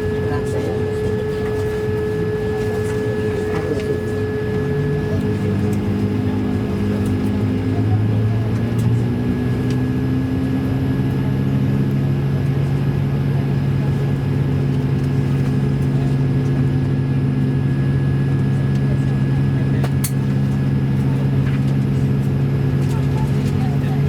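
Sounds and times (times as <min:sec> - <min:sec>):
aircraft cabin drone: 0:00.0 - 0:24.0.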